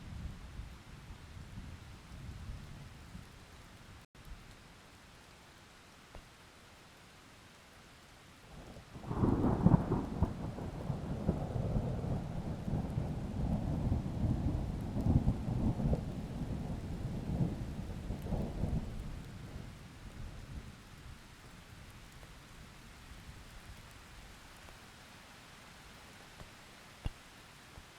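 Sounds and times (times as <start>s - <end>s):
steady rain: 0.0s - 27.9s
thunder rumbling: 9.0s - 19.8s.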